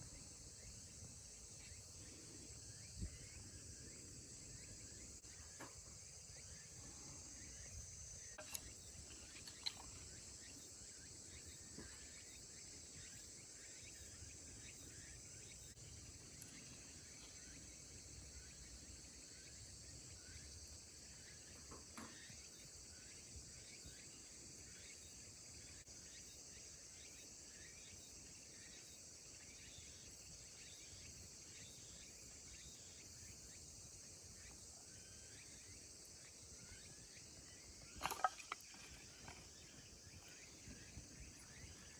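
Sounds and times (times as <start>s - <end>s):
insects chirping: 0.0s - 41.9s.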